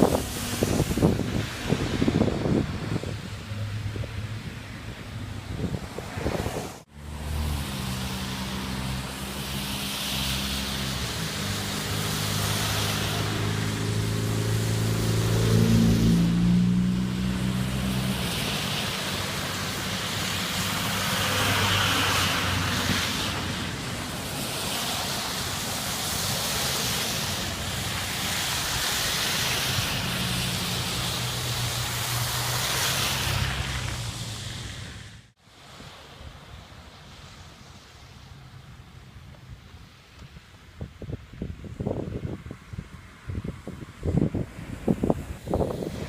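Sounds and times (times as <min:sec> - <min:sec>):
vehicle engine hum: 0:00.0 - 0:35.4
wind gusting across microphone: 0:00.0 - 0:46.0.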